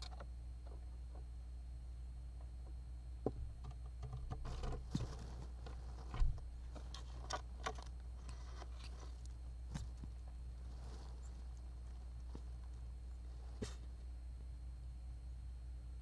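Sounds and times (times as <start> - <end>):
steady low hum: 0.0 - 16.0
dull thump: 3.2 - 6.5
squirrel scratching and rustling: 4.0 - 14.0.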